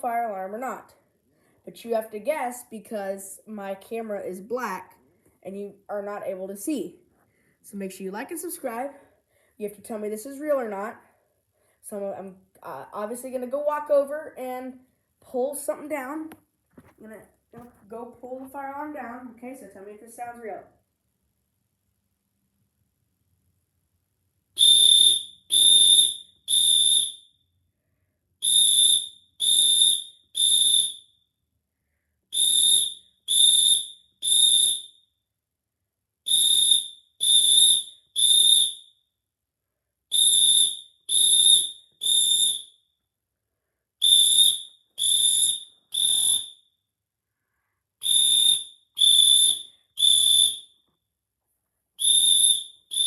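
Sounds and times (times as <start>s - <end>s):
smoke alarm beeping: 24.6s - 27.4s, 28.4s - 31.2s, 32.3s - 35.1s, 36.3s - 39.0s, 40.1s - 42.8s, 44.0s - 46.7s, 48.0s - 50.8s, 52.0s - 53.0s.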